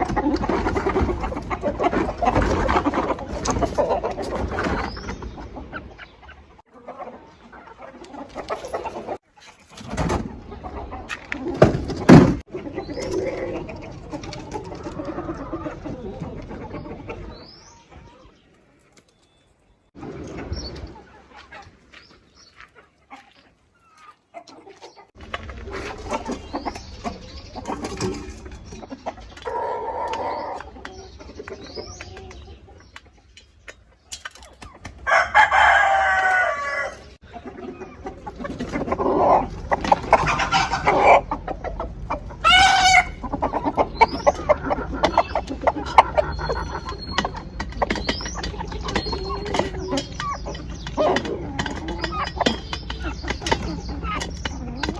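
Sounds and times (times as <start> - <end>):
chickens clucking and peeping: 0.0 - 54.9
rooster crowing: 35.0 - 37.0.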